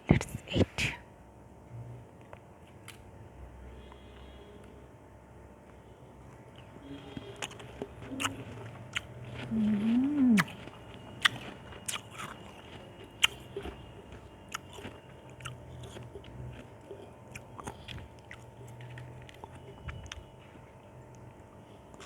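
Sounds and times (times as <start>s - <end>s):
ice crunching between teeth: 7.2s - 20.2s.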